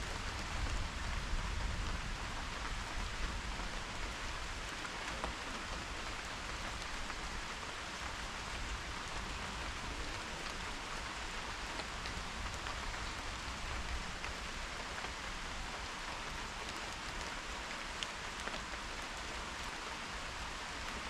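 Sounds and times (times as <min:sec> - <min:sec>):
steady rain hiss: 0:00.0 - 0:21.0.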